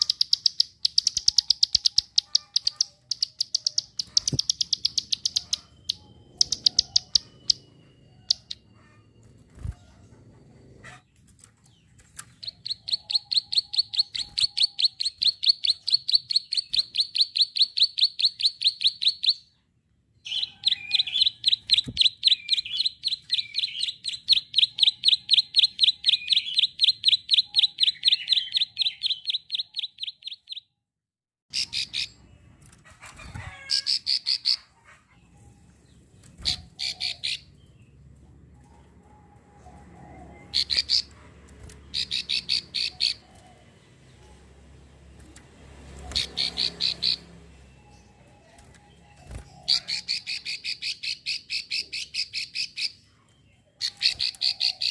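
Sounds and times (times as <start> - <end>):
bird rapid clicking call: 0.0 - 7.7, 21.2 - 30.6, 45.2 - 47.3, 53.8 - 54.9.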